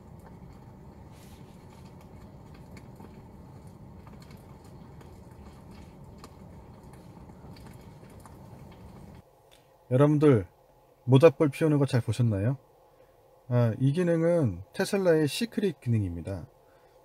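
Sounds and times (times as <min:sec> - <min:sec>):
campfire crackles and pops: 0:00.0 - 0:09.6
steady low rumble: 0:00.0 - 0:09.9.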